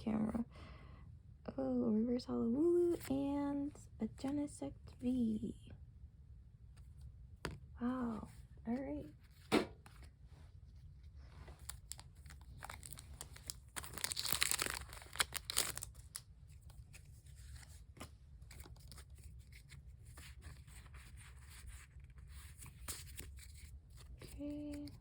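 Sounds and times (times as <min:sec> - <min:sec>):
wrapper crinkling: 0:11.4 - 0:17.8
wrapper tearing: 0:11.6 - 0:16.8.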